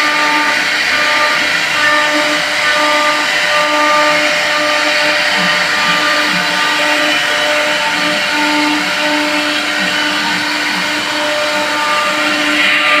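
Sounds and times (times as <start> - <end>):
router spindle whining: 0.0 - 13.0.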